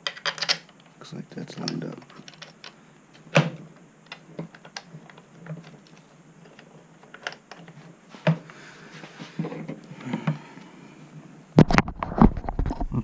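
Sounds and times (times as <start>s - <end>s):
metal parts clicking and tapping: 0.0s - 0.9s, 1.5s - 3.4s, 4.0s - 7.8s.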